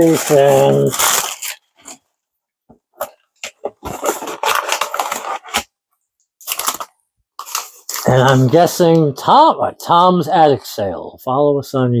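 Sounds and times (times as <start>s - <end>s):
paper or plastic rustling: 0.0s - 2.1s, 3.0s - 5.7s, 6.4s - 8.7s.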